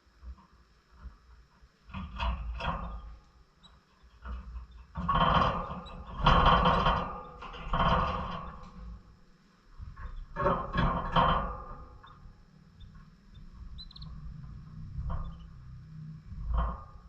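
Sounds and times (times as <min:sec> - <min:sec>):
low steady hum: 0:00.0 - 0:17.0
faint high chirps: 0:12.8 - 0:14.2.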